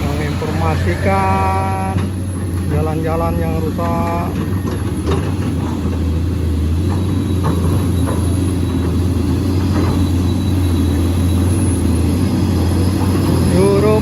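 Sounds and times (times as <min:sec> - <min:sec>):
diesel truck engine droning: 0:00.0 - 0:14.0.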